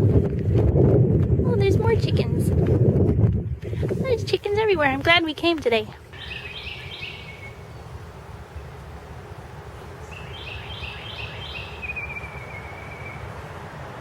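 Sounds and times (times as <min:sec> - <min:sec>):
steady low rumble: 0:00.0 - 0:14.0
songbird trilling phrase: 0:04.5 - 0:08.0, 0:10.0 - 0:13.2.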